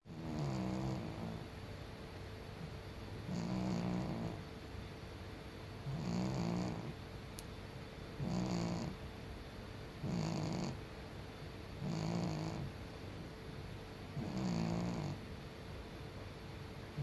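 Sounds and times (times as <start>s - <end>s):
cat snoring: 0.1s - 1.5s, 3.3s - 4.4s, 5.8s - 7.0s, 8.2s - 9.0s, 10.0s - 10.8s, 11.8s - 12.7s, 14.2s - 15.2s.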